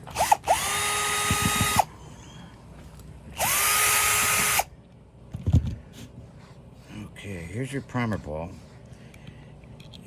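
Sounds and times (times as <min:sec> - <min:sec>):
power tool motor whining: 0:00.1 - 0:01.9, 0:03.4 - 0:04.7.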